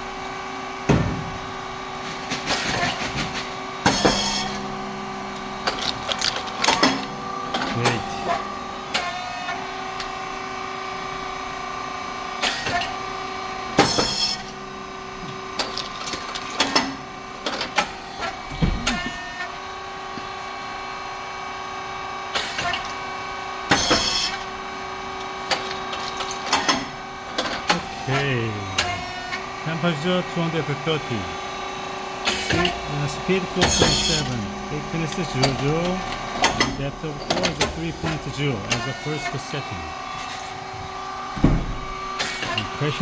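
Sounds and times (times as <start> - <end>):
hydraulic motor humming: 0.0 - 43.0
clicks and clatter: 5.6 - 8.0.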